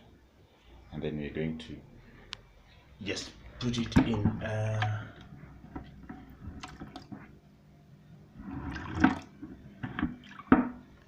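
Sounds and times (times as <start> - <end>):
water splashing: 6.3 - 7.2, 8.4 - 10.8.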